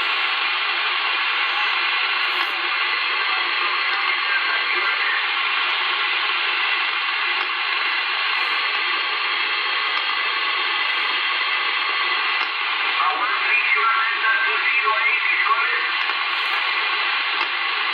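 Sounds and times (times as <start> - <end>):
faint wavering radio signal: 0.0 - 17.9
radio static hiss: 0.0 - 17.9.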